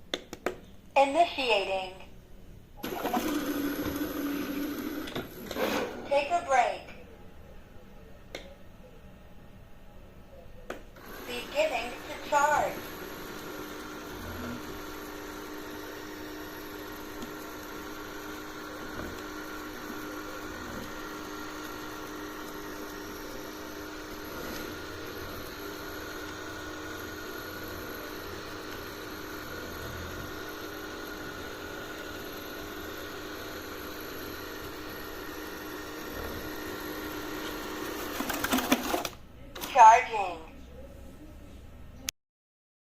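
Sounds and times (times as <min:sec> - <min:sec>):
robot vacuum cleaner whirring: 0:02.8 - 0:06.0, 0:11.0 - 0:39.7.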